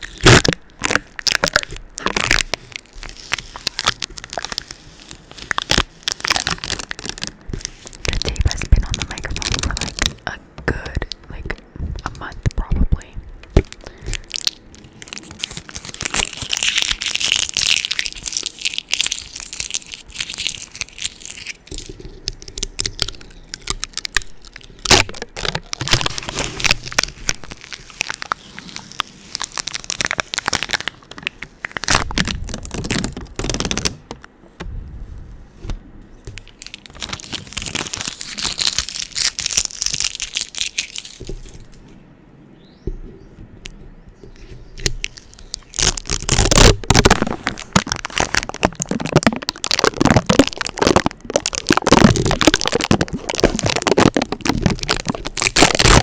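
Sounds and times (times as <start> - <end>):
adhesive tape crackling and tearing: 0.0 - 11.2, 13.5 - 34.2, 36.3 - 41.9, 44.8 - 56.0.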